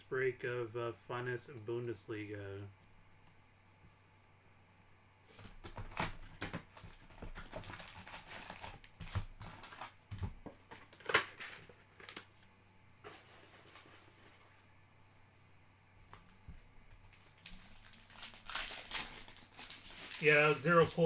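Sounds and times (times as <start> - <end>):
card wrappers crinkling: 5.6 - 12.2, 17.0 - 21.0.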